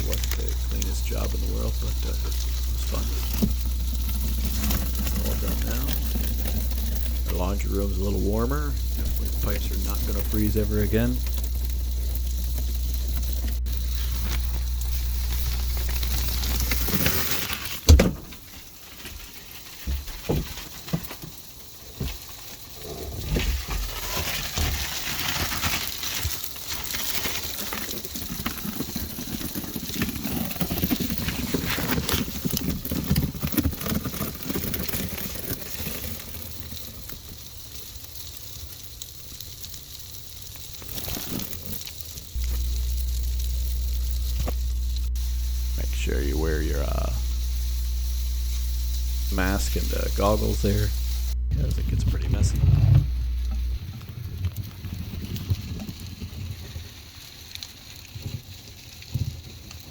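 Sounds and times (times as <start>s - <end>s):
scattered clicks: 0.0s - 17.7s, 27.8s - 54.7s
low hum: 0.0s - 19.0s, 40.4s - 55.9s
crackling and rustling: 0.0s - 59.9s.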